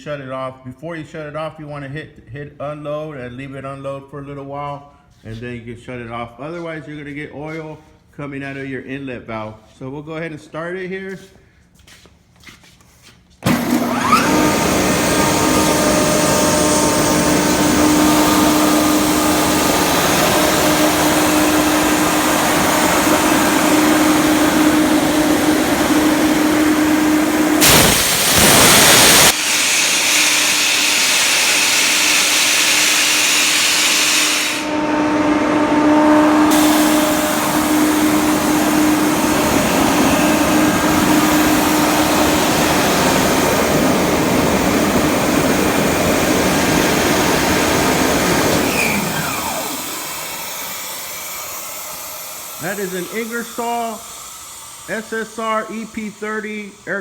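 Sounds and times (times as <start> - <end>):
air compressor droning: 13.4 - 57.0
loud rush of air: 15.0 - 29.5, 33.5 - 50.3.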